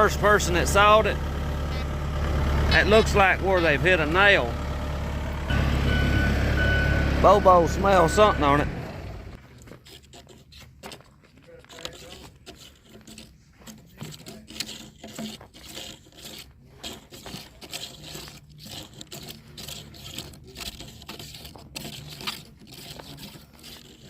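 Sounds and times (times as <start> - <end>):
scraping and rubbing: 2.7 - 4.5, 9.4 - 24.0.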